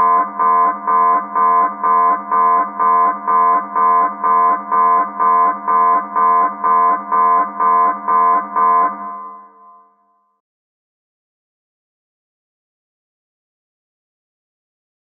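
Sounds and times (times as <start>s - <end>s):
submarine alarm pulses: 0.0s - 10.0s.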